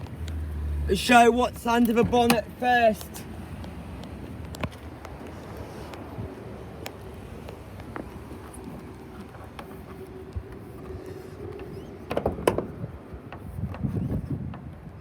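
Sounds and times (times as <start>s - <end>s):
clicks and knocks inside car: 1.6s - 3.0s.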